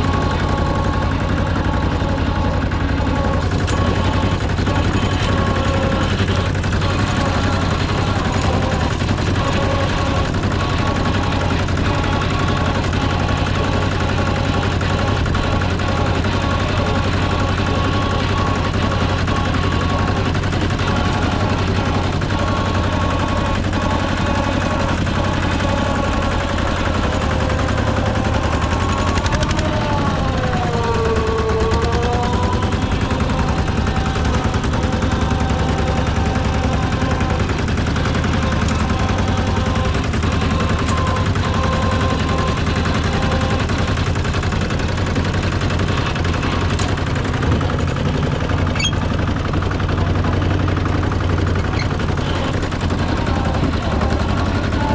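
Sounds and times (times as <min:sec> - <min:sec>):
combine harvester engine clattering: 0:00.0 - 0:54.9
whining tone: 0:00.0 - 0:54.9.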